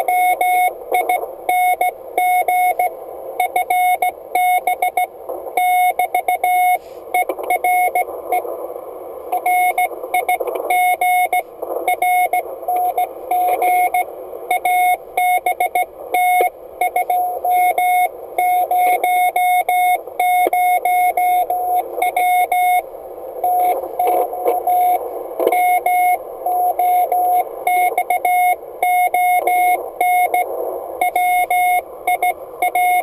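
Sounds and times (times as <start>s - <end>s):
morse code beeps: 0.0s - 8.4s, 9.3s - 33.0s
receiver hiss: 0.0s - 33.0s.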